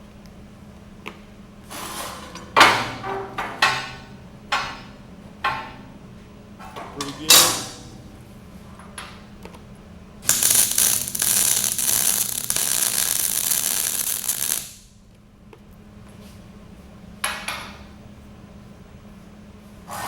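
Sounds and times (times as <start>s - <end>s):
steady low hum: 0.0s - 19.9s
welding arc crackling: 10.2s - 14.9s.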